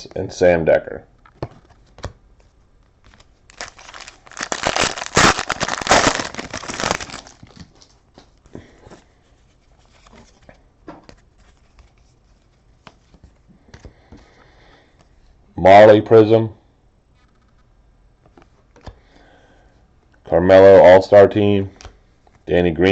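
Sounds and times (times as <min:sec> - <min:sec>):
cards rustling and clicking: 0:01.2 - 0:14.2, 0:17.2 - 0:19.0
foil pack tearing and crinkling: 0:03.2 - 0:07.7.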